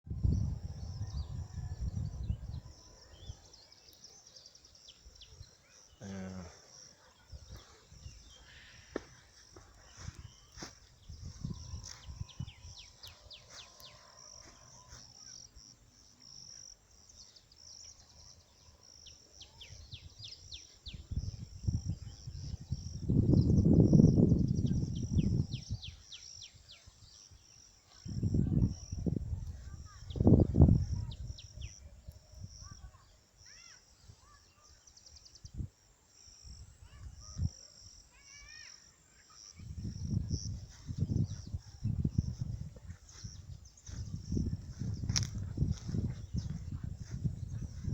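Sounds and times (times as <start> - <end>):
crickets trilling: 0.1 - 47.9
insect chirring: 35.7 - 47.9.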